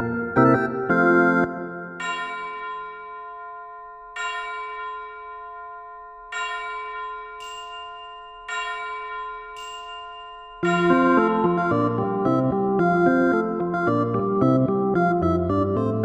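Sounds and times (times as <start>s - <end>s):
keyboard music: 0.0s - 2.2s, 10.6s - 16.0s
bell ringing: 1.9s - 13.9s.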